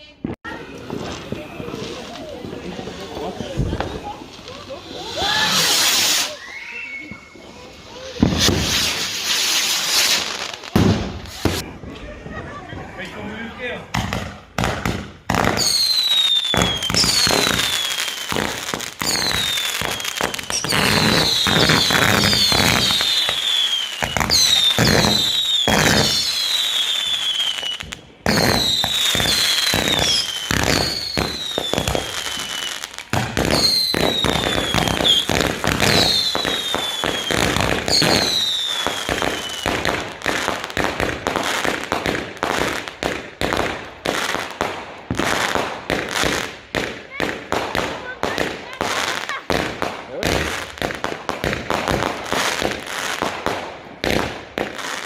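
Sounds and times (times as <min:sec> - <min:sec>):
firework bangs and crackles: 0:00.0 - 0:55.0
firework whistles: 0:00.6 - 0:11.7, 0:15.4 - 0:41.7.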